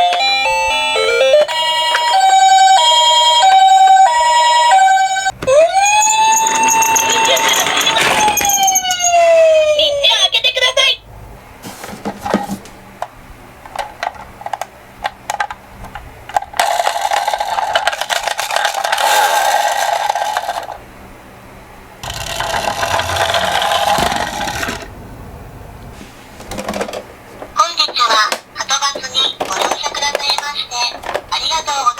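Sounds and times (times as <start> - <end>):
toy cars rolling rattling: 5.8 - 9.1, 16.4 - 20.8, 22.0 - 24.9, 28.0 - 31.8.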